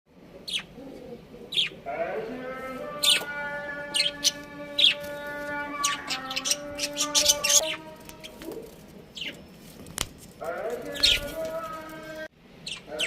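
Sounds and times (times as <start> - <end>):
budgerigars chirping: 0.4 - 0.8, 1.5 - 1.8, 3.0 - 3.3, 3.9 - 5.2, 5.8 - 8.4, 9.1 - 9.5, 10.9 - 11.3, 12.6 - 13.0.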